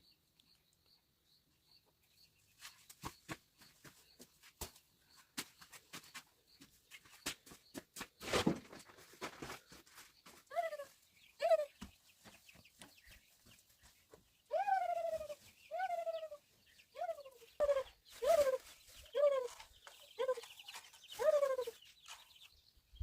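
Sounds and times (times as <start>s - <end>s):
animal calling: 10.5s - 11.8s, 14.5s - 21.8s.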